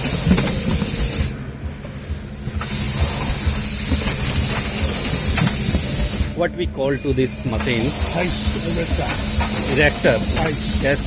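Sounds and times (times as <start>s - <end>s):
compressed air hiss: 0.0s - 1.4s, 2.1s - 6.4s, 7.5s - 11.0s
machine thudding and clatter: 0.0s - 1.4s, 2.4s - 6.4s.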